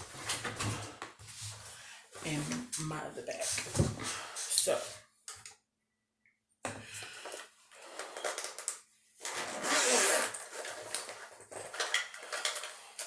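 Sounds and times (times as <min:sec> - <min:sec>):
rustling makeup bag: 0:10.2 - 0:13.0.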